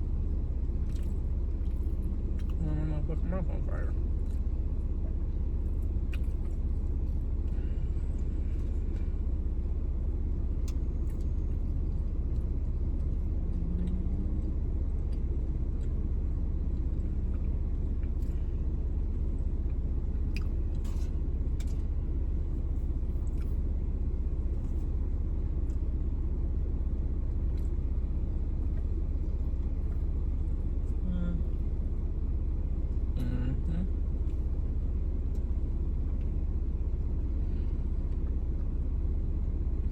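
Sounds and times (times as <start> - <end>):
car engine idling: 0.0 - 39.9
faint eating clicks: 0.8 - 2.6, 5.6 - 7.6, 19.1 - 21.9, 22.8 - 23.6.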